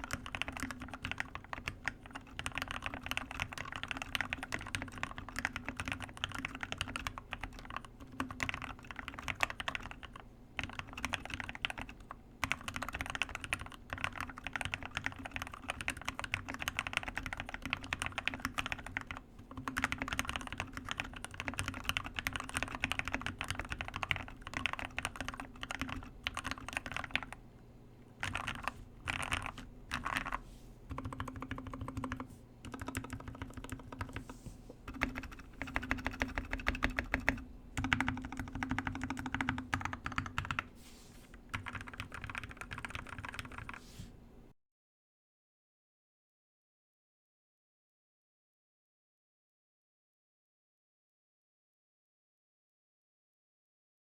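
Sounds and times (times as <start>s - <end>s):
mechanical keyboard typing: 0.0s - 27.4s, 28.2s - 34.3s, 34.9s - 40.7s, 41.5s - 43.8s.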